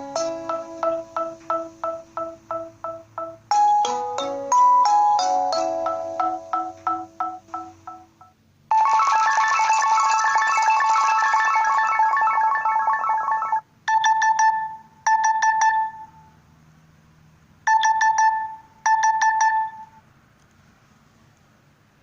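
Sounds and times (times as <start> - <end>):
melodic phone alarm tune: 0.0 - 16.3, 17.7 - 20.0
beeping alarm bursts: 17.7 - 20.0.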